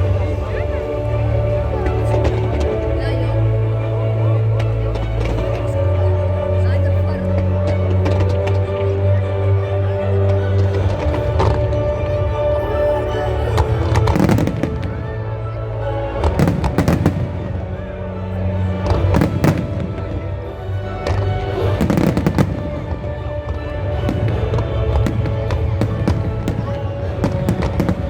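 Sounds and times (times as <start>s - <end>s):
loud music playing: 7.1s - 28.0s
fireworks bursting and crackling: 13.8s - 15.2s, 16.2s - 17.6s, 18.9s - 28.0s.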